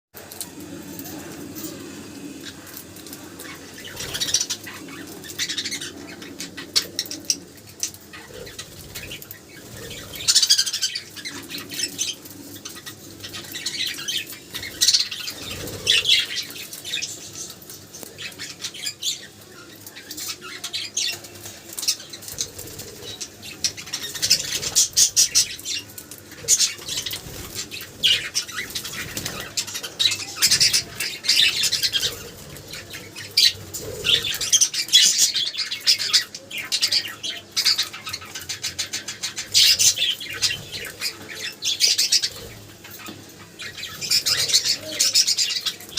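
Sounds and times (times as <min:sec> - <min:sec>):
wing flutters: 0:00.2 - 0:35.2
budgerigars chirping and chattering: 0:01.0 - 0:45.9.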